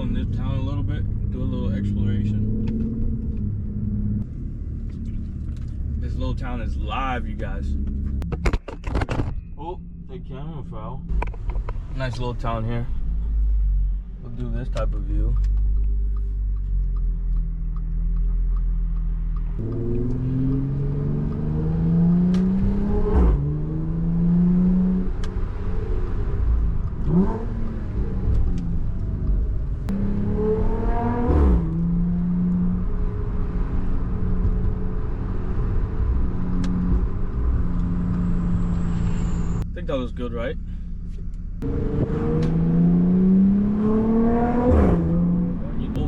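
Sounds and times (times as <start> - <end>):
car engine accelerating: 0.0 - 8.6, 9.5 - 46.0.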